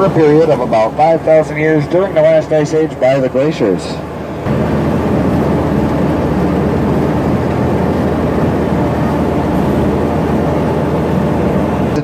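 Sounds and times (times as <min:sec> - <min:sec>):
boat engine humming: 0:00.0 - 0:12.0.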